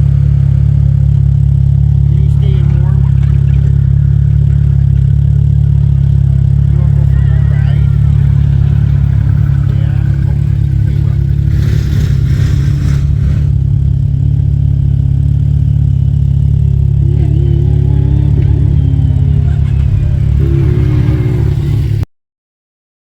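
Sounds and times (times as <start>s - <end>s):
atv engine revving: 0.0s - 22.1s
rushing hiss: 8.9s - 13.7s.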